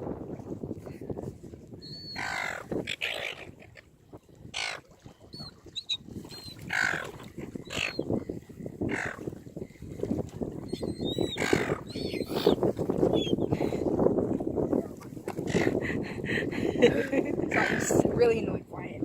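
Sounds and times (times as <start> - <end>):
seagulls squawking: 1.8 - 3.4, 5.4 - 8.1, 10.7 - 13.4.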